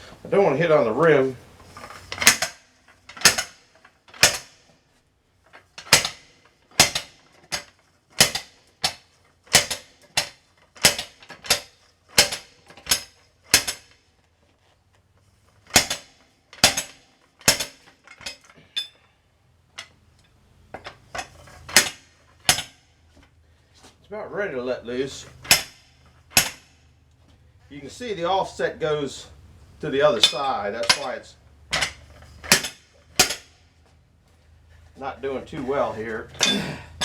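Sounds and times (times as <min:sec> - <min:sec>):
hammer clanking on metal: 0:02.0 - 0:04.6, 0:05.5 - 0:14.0, 0:15.7 - 0:19.0, 0:20.8 - 0:22.8, 0:25.4 - 0:26.8, 0:30.1 - 0:33.6, 0:36.4 - 0:37.0.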